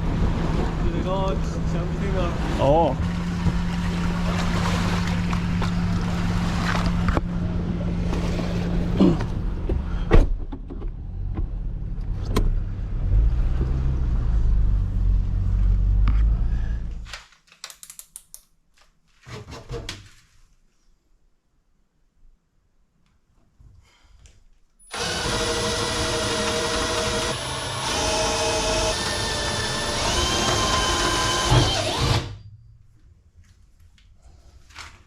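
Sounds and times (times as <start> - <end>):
engine running: 0.0 - 10.1.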